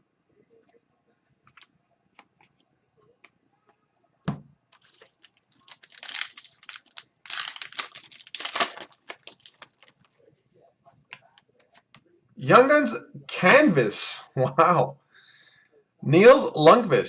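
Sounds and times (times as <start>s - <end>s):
card pack wrapper crinkling and tearing: 4.8s - 10.1s.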